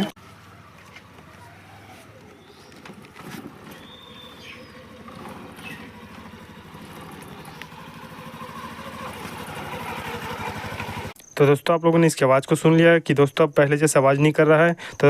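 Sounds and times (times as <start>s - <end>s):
motorcycle engine running: 0.0s - 11.2s.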